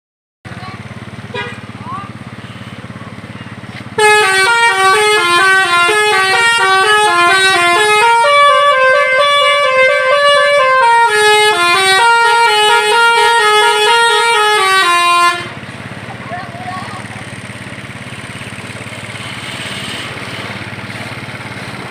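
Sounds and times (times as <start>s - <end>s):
air horn trumpets playing a melody: 1.3s - 1.6s, 4.0s - 15.6s.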